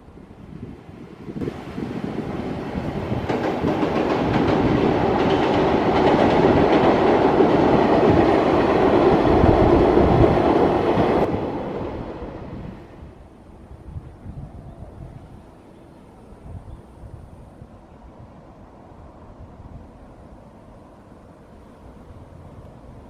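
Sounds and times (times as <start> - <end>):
freight train passing: 0.0 - 23.0
wheels clattering over rail joints: 1.4 - 11.3.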